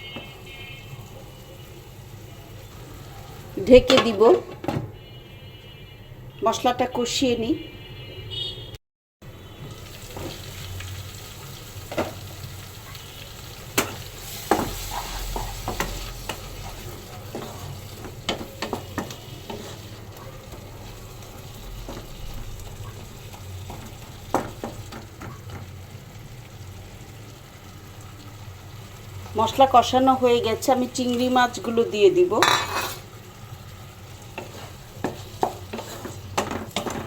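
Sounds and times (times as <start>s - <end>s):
spice paste sizzling in a pan: 0.0s - 3.7s, 9.3s - 37.0s.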